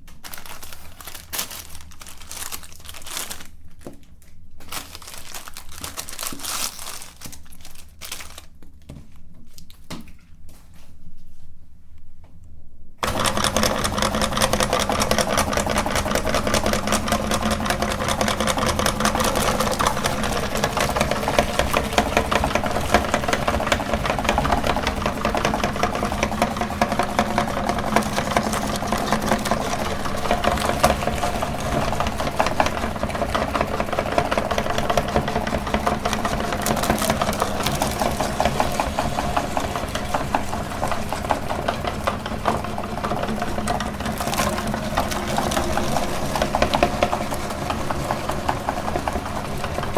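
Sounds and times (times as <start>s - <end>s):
electric meat grinder running: 13.0s - 49.9s.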